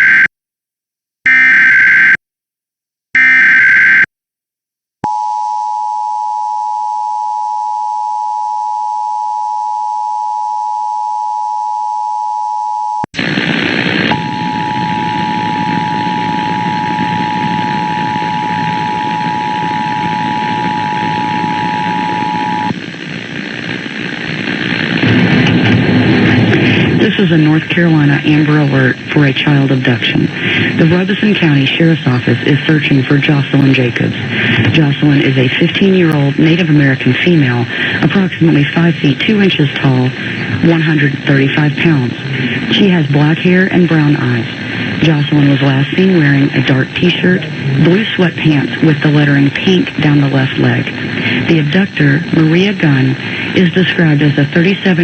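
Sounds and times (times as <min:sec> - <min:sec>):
loud rough noise: 0:13.2 - 0:36.6, 0:38.8 - 0:54.0.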